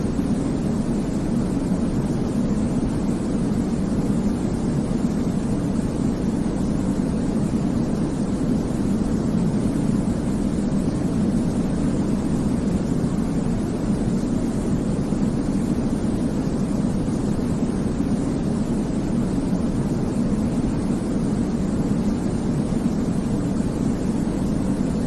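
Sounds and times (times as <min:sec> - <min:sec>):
deep white noise rushing: 0:00.0 - 0:25.0.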